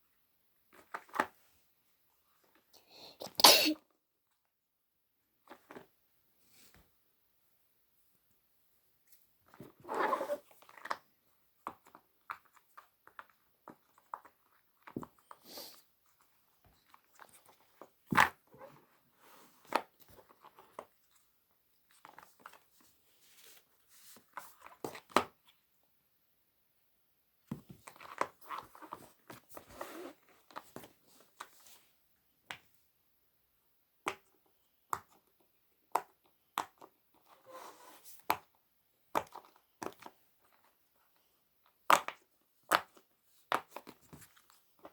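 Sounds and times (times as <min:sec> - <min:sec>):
crinkling and rustling: 0:09.0 - 0:25.6, 0:27.5 - 0:31.9.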